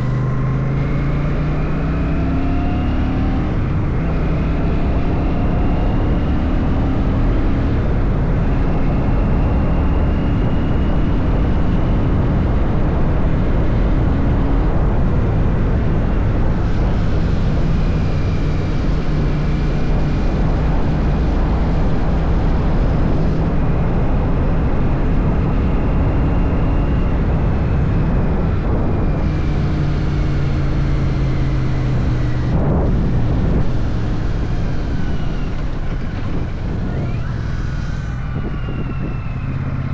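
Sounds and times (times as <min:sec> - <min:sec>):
motorcycle engine running: 0:00.0 - 0:39.9
rush of air: 0:31.9 - 0:39.9.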